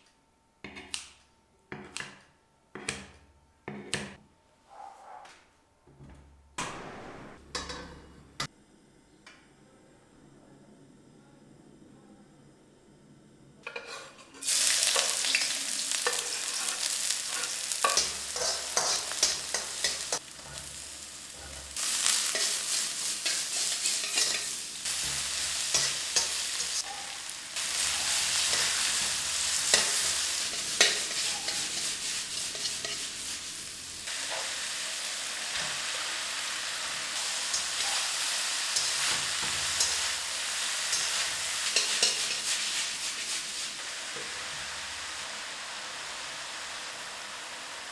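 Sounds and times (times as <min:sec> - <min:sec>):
spatula scraping a pan: 0:13.7 - 0:35.0, 0:35.6 - 0:44.7
food sizzling in a hot pan: 0:13.7 - 0:47.9.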